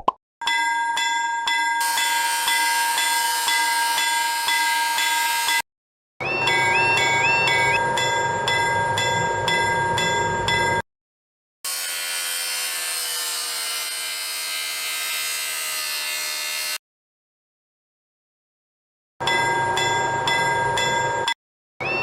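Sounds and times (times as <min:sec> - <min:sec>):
steady tone: 0:06.2 - 0:10.4
railroad crossing signal dinging: 0:06.2 - 0:10.8.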